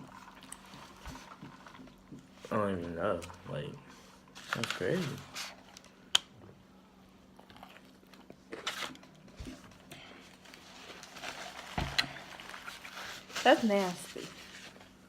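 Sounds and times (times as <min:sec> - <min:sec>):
wrappers crinkling: 0:04.4 - 0:05.9, 0:10.4 - 0:15.0
chewing: 0:07.4 - 0:09.2.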